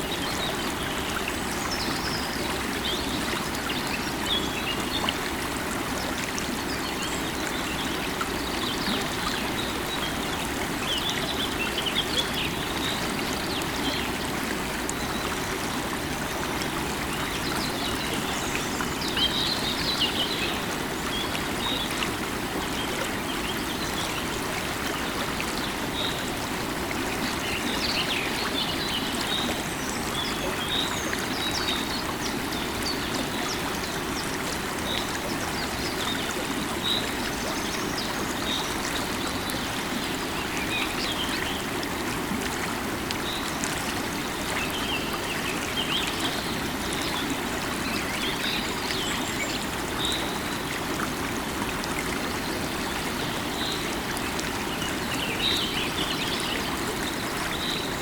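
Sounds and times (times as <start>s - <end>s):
river water over rocks: 0.0s - 58.0s.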